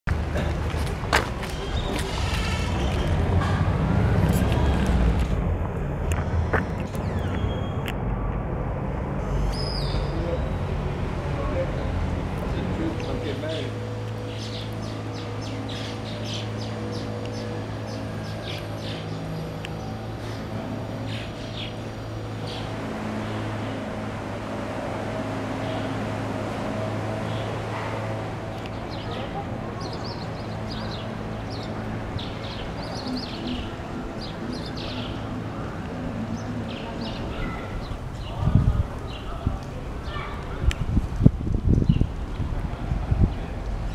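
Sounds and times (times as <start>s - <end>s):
birds chirping: 1.4s - 3.6s, 6.2s - 7.9s, 9.4s - 23.8s, 27.1s - 40.6s.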